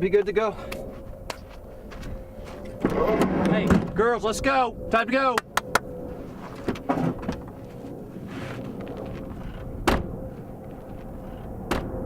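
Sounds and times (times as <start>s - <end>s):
low background rumble: 0.0s - 12.0s.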